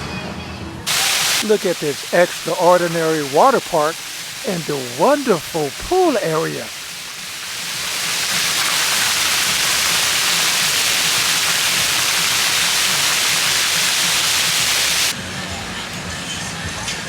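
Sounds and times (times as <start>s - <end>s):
falling and splashing water: 0.9s - 15.1s.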